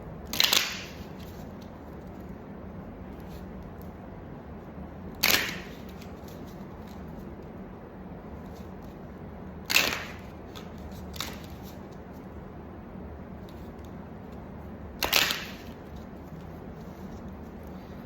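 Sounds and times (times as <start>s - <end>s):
cards snapping: 0.2s - 1.3s, 5.2s - 7.0s, 9.7s - 11.7s, 15.0s - 15.8s.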